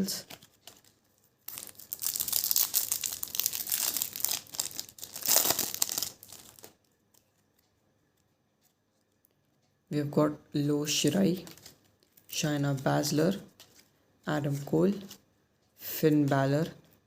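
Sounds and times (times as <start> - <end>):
foil wrapper crinkling and tearing: 0.2 - 6.8.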